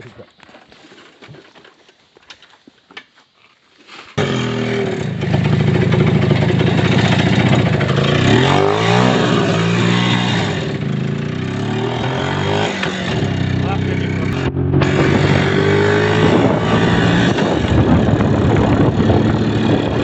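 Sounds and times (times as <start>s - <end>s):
vehicle engine revving: 4.2s - 20.0s.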